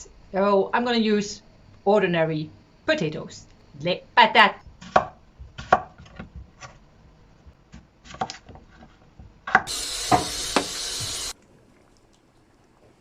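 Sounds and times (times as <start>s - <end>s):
loud steady hiss: 9.7s - 11.4s.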